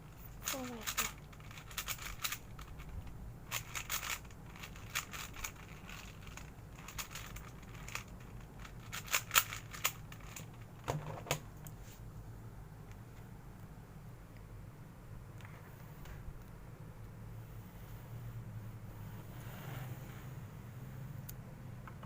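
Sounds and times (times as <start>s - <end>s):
puzzle cube clicking and rattling: 0.2s - 11.4s.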